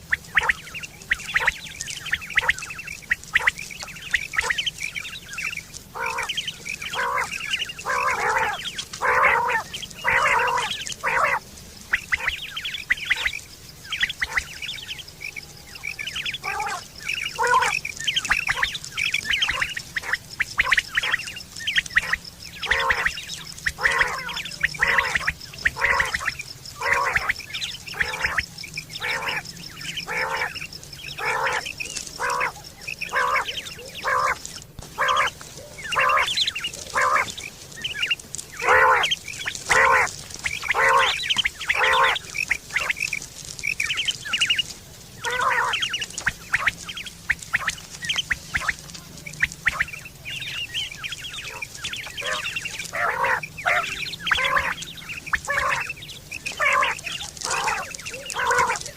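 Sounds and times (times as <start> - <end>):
quail calling: 0.0 - 58.9.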